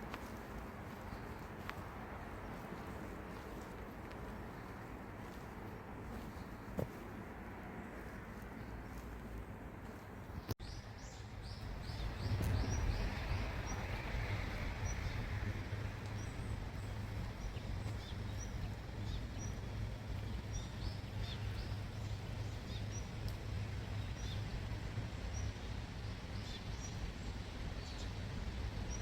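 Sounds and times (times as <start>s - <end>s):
low background rumble: 0.0s - 29.0s
bird chirping: 16.0s - 28.2s.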